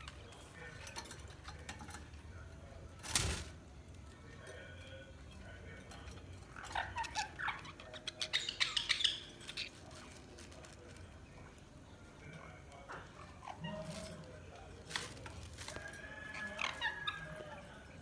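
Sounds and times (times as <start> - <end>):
budgerigars chirping: 6.5 - 9.8.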